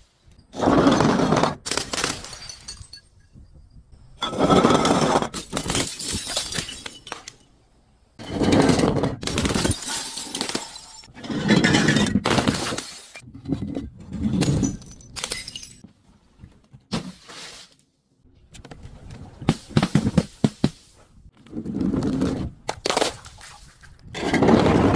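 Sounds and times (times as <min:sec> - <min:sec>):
glass bottles shattering: 0:01.7 - 0:03.4, 0:04.2 - 0:07.5, 0:09.2 - 0:13.2, 0:14.4 - 0:15.8
glass crackles: 0:09.4 - 0:13.2.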